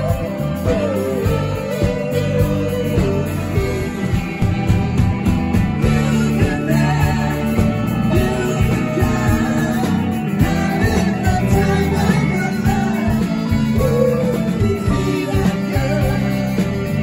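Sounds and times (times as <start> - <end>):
person singing: 0.0 - 4.4, 5.8 - 17.0
bass guitar: 0.0 - 17.0
drums: 0.0 - 17.0
electric guitar: 0.0 - 17.0.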